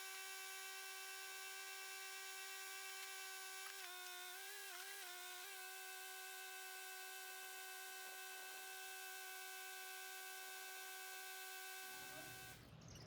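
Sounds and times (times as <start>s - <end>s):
backhoe engine high whine: 0.0s - 12.7s.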